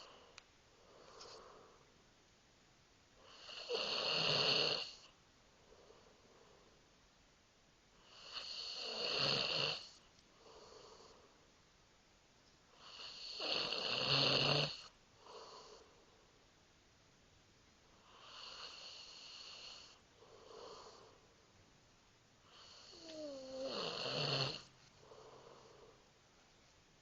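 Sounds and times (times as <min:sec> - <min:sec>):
person snoring: 0:03.2 - 0:05.1, 0:08.0 - 0:11.2, 0:12.8 - 0:15.9, 0:22.5 - 0:25.9.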